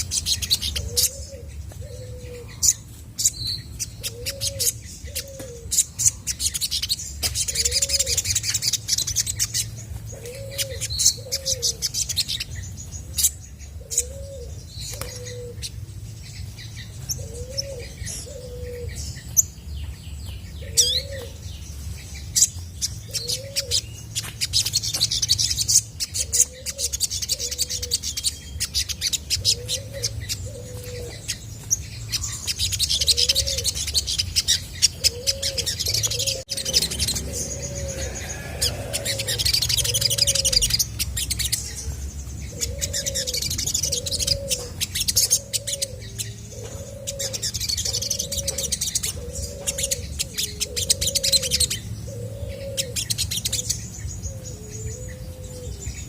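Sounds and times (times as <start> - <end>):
bird chirps and ticking trills: 0.0 - 56.0
low arched bird call: 32.2 - 40.8.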